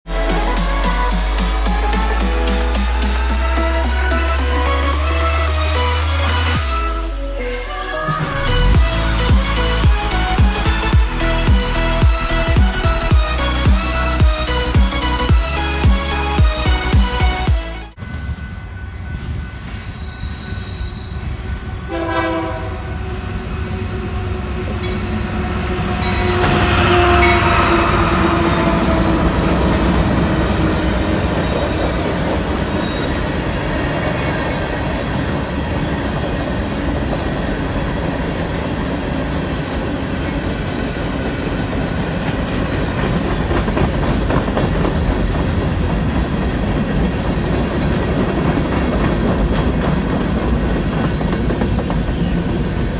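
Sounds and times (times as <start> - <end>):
rail cars rumbling and clacking: 8.1 - 52.9
train horn: 19.8 - 35.8.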